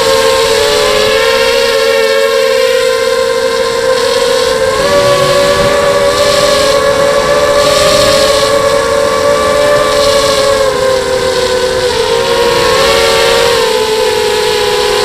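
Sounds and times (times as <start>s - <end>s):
drone motors and propellers whining: 0.0s - 15.0s.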